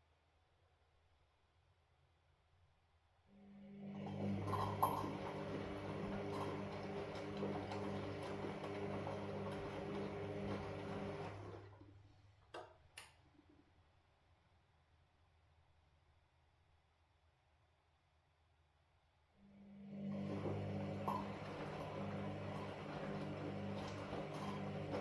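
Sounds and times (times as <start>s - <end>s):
washing machine motor humming: 3.8s - 11.9s, 19.7s - 25.0s.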